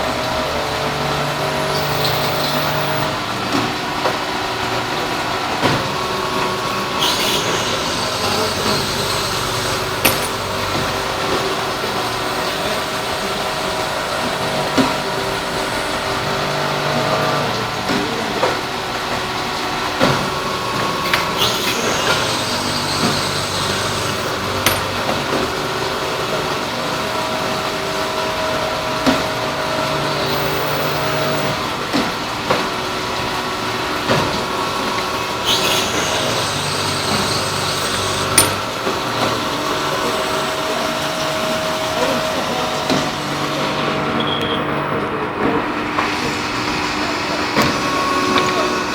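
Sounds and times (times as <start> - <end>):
industrial machine humming and whining: 0.0 - 48.9
machine clicks and knocks: 8.8 - 11.0, 38.4 - 38.8.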